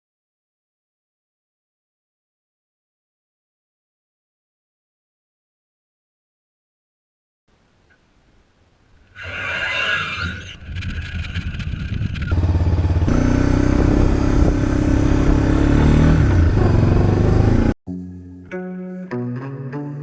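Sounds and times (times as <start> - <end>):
atv engine revving: 10.7 - 17.8
music with plucked bass: 13.7 - 20.0.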